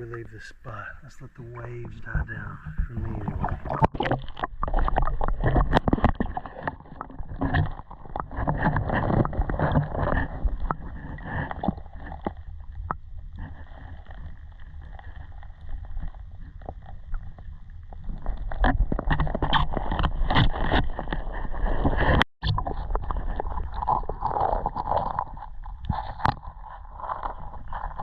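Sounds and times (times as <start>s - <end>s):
creek water splashing: 0.0s - 12.2s.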